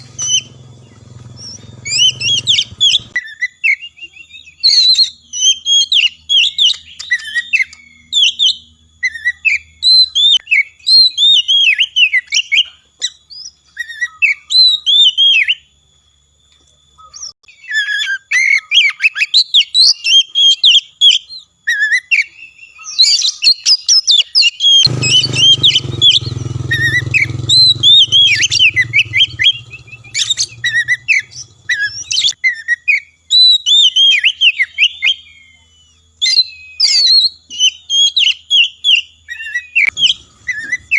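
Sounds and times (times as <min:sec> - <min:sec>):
bird singing whistles and chirps: 0:00.0 - 0:15.8, 0:17.0 - 0:40.9
low hum: 0:25.0 - 0:32.2.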